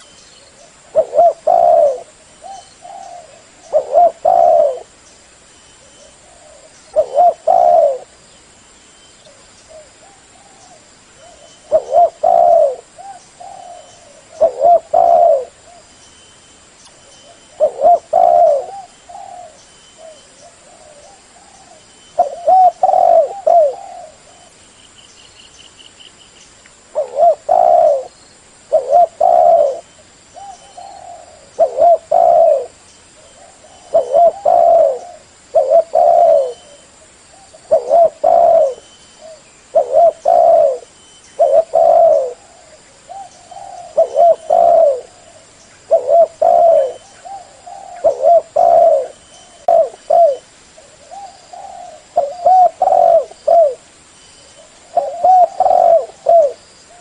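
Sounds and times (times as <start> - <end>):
dove cooing: 0.0 - 5.0, 5.8 - 8.2, 9.3 - 15.9, 17.0 - 24.6, 26.9 - 53.9, 54.5 - 57.0.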